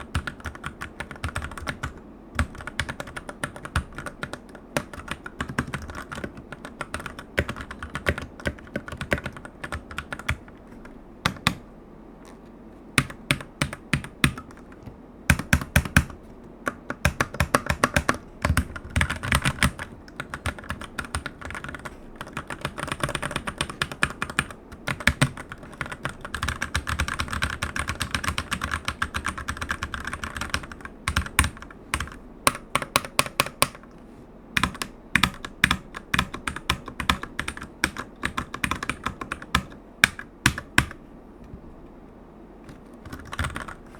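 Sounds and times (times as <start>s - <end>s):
mechanical keyboard typing: 0.0s - 11.7s, 13.0s - 33.9s, 34.6s - 41.0s, 42.7s - 43.9s.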